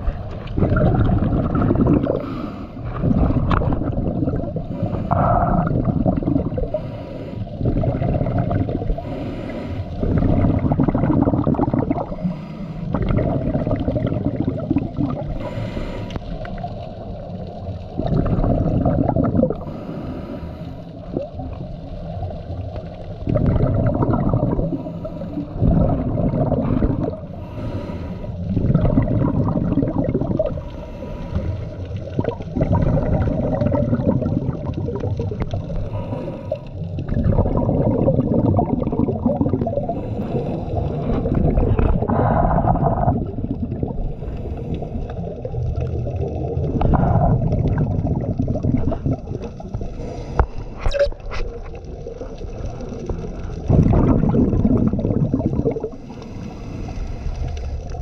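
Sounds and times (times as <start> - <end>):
exhaled bubbles gurgling underwater: 0.0 - 58.0
inhalations through a regulator: 8.9 - 10.1, 15.3 - 16.3, 27.3 - 28.4, 55.8 - 57.8.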